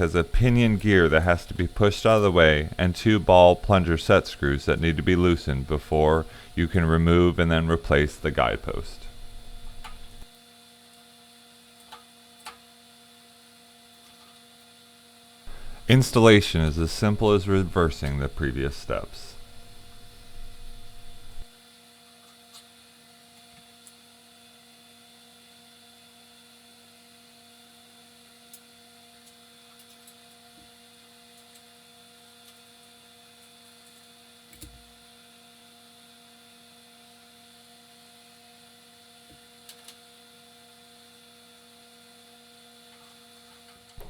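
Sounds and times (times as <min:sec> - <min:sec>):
faint electrical hum: 0:00.0 - 0:10.3, 0:15.5 - 0:21.5.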